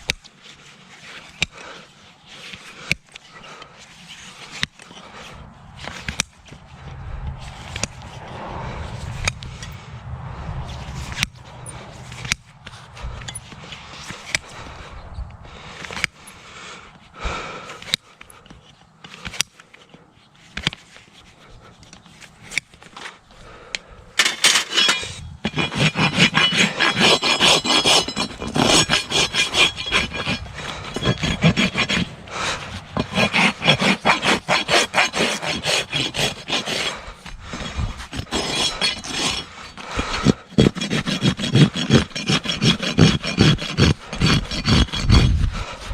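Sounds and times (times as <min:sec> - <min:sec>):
rasp filing a hoof: 0:00.0 - 0:09.8, 0:10.6 - 0:15.0, 0:15.6 - 0:16.5, 0:24.2 - 0:45.9.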